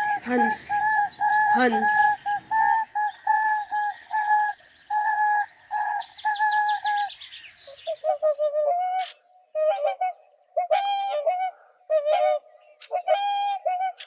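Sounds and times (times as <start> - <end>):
small birds chirping: 0.0 - 3.3.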